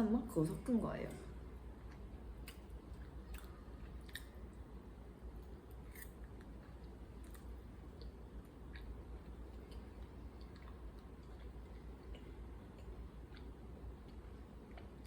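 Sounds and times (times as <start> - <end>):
low steady hum: 0.0 - 15.0
person chewing: 1.7 - 4.6, 5.3 - 15.0.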